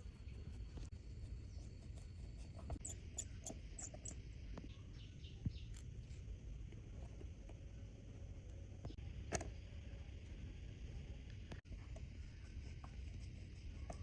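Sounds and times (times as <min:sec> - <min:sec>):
small tools clicking on watch parts: 0:02.8 - 0:04.2.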